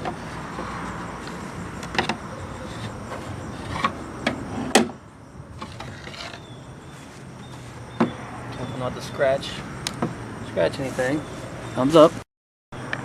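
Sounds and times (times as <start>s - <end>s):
car parts clicking and knocking: 0.0s - 5.0s, 5.6s - 6.5s, 7.4s - 8.7s, 9.8s - 10.2s
steady background noise: 0.0s - 12.2s.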